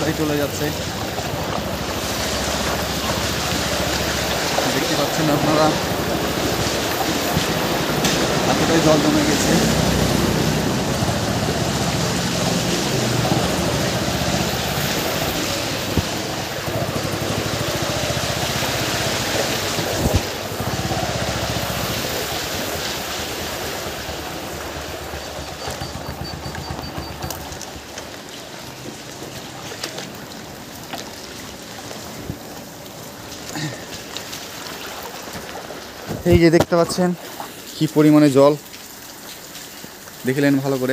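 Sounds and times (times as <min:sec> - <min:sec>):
heavy rain: 0:00.0 - 0:40.9
water splashing: 0:00.0 - 0:40.9
motorbike engine running: 0:24.0 - 0:27.9.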